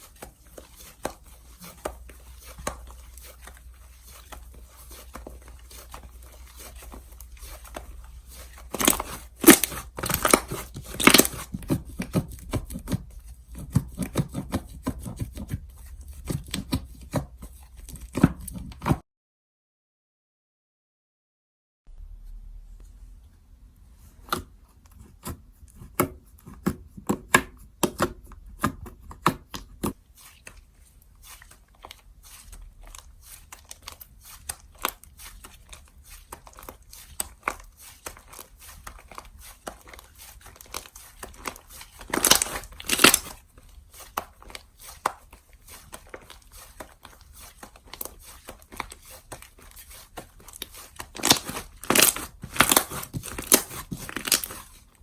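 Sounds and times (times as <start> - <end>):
slime squished by hand: 0.1 - 19.0, 24.2 - 54.9.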